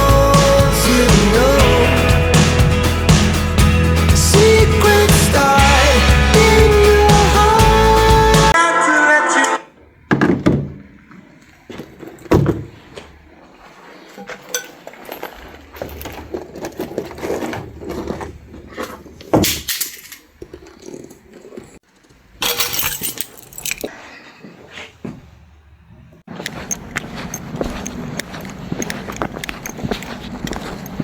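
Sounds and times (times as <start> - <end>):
objects knocking and clinking: 14.2 - 16.3, 22.4 - 23.9, 26.4 - 31.0.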